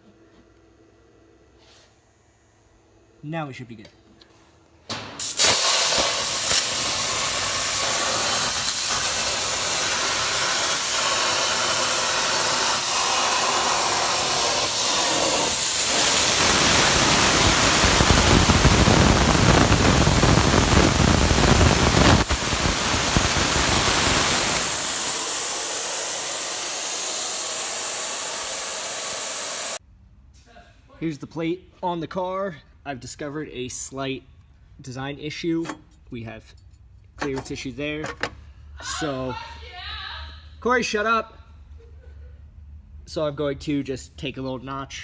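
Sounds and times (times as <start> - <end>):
plasma cutter hissing: 5.2 - 29.8.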